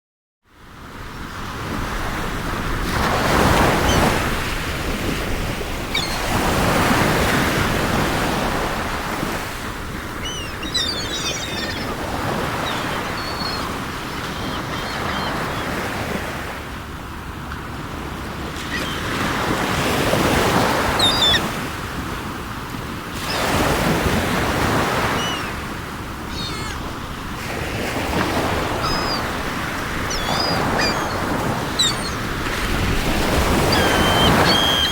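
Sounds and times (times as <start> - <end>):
sea waves breaking: 1.3 - 34.9
seagulls calling: 3.2 - 4.5, 5.8 - 16.5, 18.4 - 21.8, 23.2 - 34.9.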